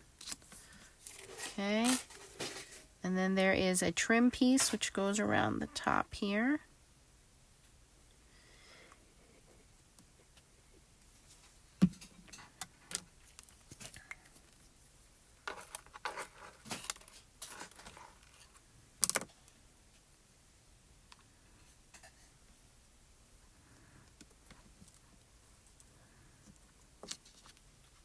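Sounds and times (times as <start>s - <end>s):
paper crinkle: 0.2s - 2.9s.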